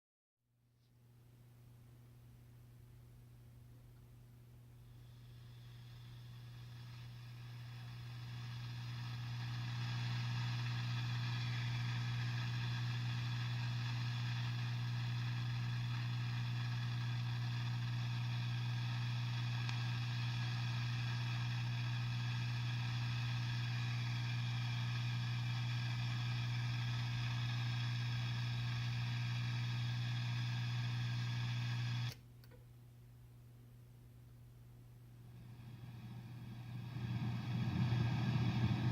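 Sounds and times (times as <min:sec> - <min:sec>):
guitar amp low hum: 0:00.7 - 0:38.9
steady whining tones: 0:04.7 - 0:32.2, 0:35.2 - 0:38.9
hissing static: 0:04.8 - 0:32.2, 0:35.3 - 0:38.9.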